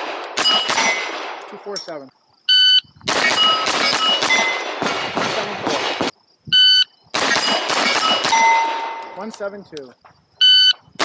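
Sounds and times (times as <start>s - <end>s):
rapid gunshots: 0.0s - 1.4s, 3.1s - 6.1s, 7.2s - 8.8s.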